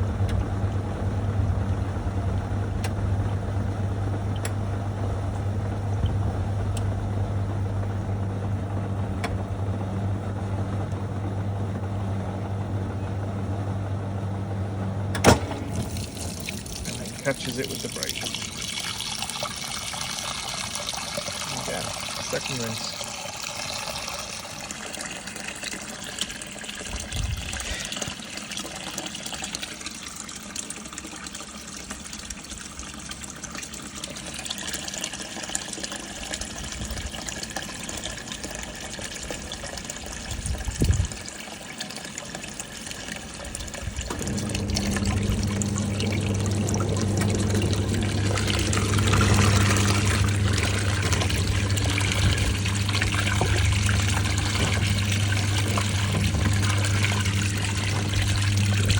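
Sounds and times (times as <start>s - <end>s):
electrical hum: 0.0s - 30.1s, 30.7s - 58.9s
water pouring into washing machine: 15.0s - 58.9s.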